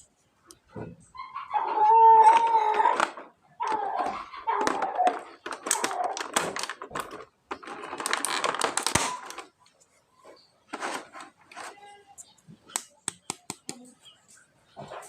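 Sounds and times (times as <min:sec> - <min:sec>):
plastic packaging crinkling: 0:02.8 - 0:09.5.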